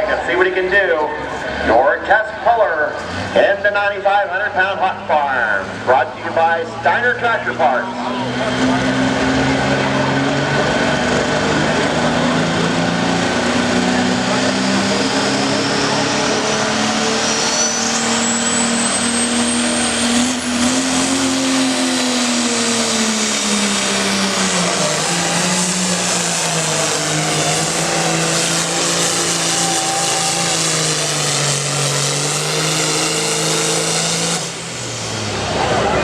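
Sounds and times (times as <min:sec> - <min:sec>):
tractor engine running under load: 0:07.5 - 0:36.0.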